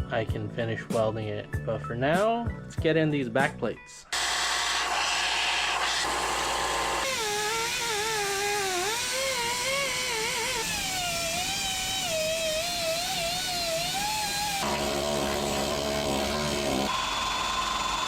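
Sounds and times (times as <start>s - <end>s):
power tool motor whining: 4.1s - 18.0s.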